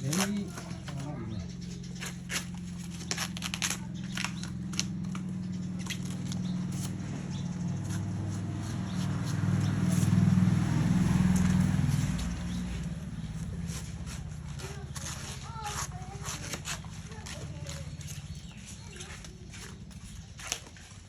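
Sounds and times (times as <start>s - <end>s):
bamboo sheath peeling snaps: 2.0s - 5.2s.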